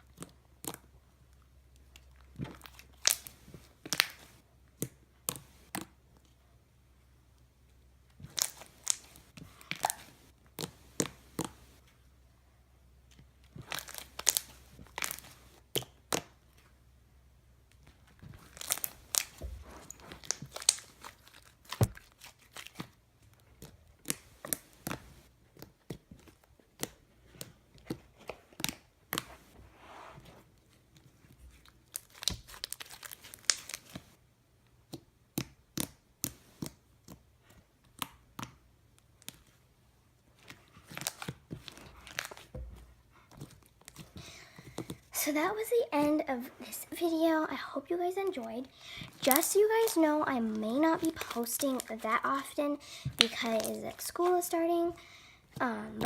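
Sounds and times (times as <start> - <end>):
slime clicking and popping: 8.2 - 11.8, 13.6 - 16.3, 18.4 - 22.9, 32.0 - 34.0.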